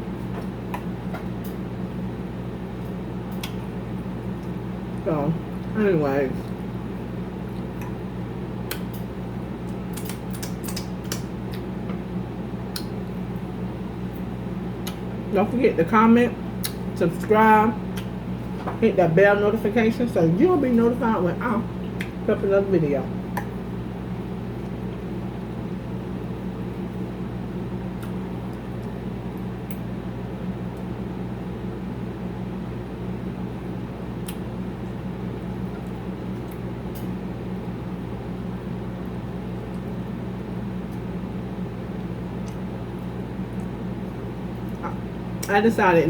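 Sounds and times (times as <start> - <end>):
mechanical hum: 0.0 - 46.0
chewing crunches: 6.4 - 11.8.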